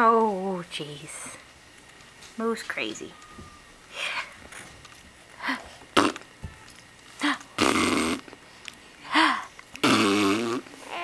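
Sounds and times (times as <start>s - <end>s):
burp-like mouth noises: 6.0s - 6.3s, 7.6s - 8.3s, 9.8s - 10.6s.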